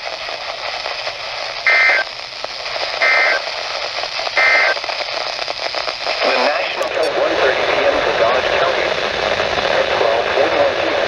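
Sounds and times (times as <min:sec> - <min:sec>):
radio static hiss: 0:00.0 - 0:11.0
short data tone bursts: 0:01.7 - 0:02.1, 0:03.0 - 0:03.5, 0:04.4 - 0:04.8.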